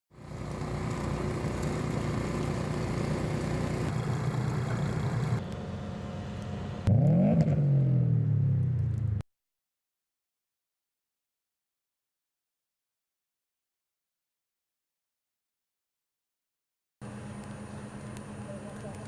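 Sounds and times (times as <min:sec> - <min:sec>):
engine revving and humming: 0:00.2 - 0:09.2.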